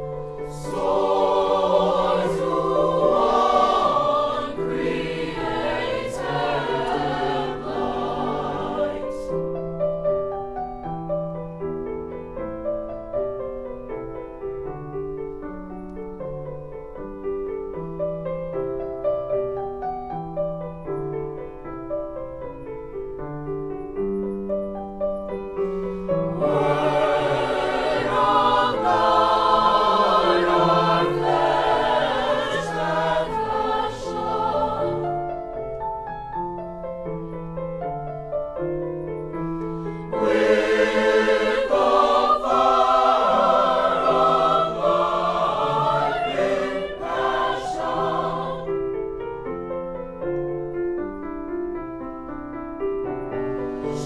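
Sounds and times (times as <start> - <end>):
choir singing: 0.0 - 10.0, 26.0 - 35.6, 39.9 - 49.0, 53.6 - 54.0.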